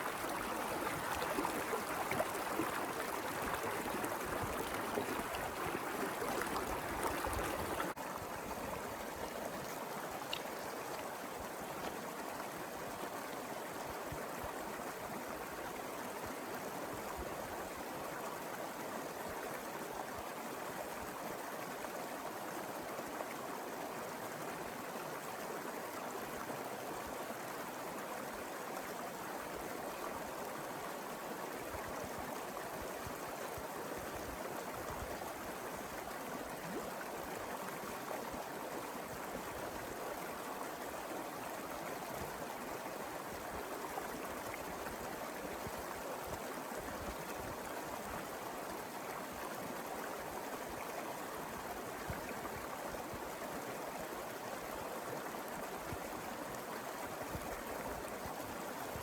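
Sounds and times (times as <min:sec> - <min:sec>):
river flowing over rocks: 0:00.0 - 0:13.5.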